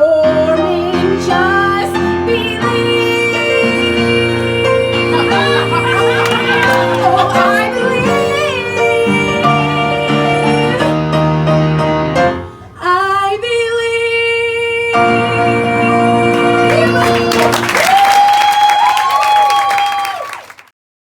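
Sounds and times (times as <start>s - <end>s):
person singing long notes: 0.0s - 11.0s
instrumental accompaniment: 0.2s - 12.6s
audience applause: 5.0s - 10.9s, 16.3s - 20.7s.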